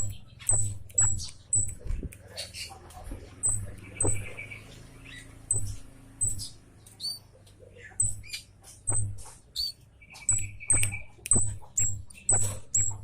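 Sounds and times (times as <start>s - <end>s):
buzzy bird trill: 0.0s - 2.8s, 3.4s - 13.0s
high bird calls: 0.0s - 13.0s
low thud: 8.9s - 9.3s.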